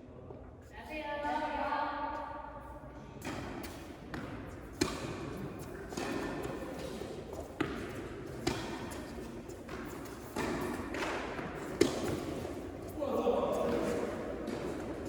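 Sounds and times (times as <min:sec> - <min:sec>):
tennis balls struck by rackets: 0:03.2 - 0:12.9, 0:13.6 - 0:15.0.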